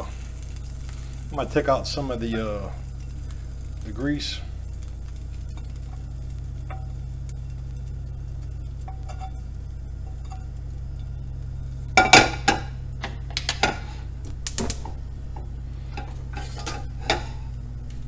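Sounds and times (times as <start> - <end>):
steady low hum: 0.0 - 18.0
metal utensil scraping frying pan: 8.8 - 9.4, 10.1 - 10.6, 15.9 - 17.6.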